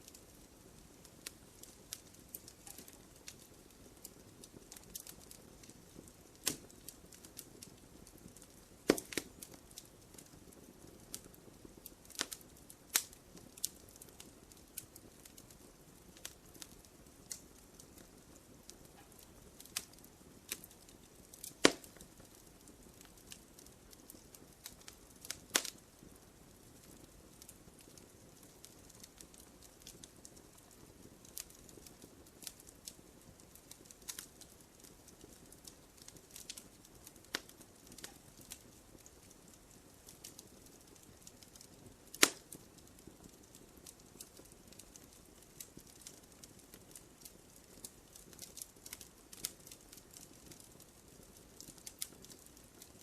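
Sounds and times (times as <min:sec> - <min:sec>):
wood fire crackling: 0:00.0 - 0:53.0.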